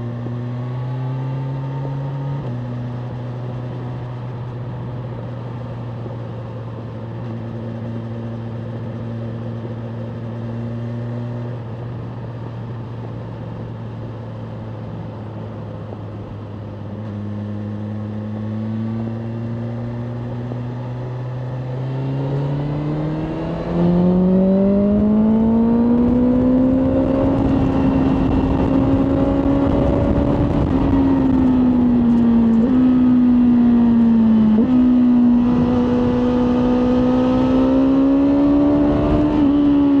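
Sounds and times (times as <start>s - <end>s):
motorcycle engine revving: 17.1s - 40.0s.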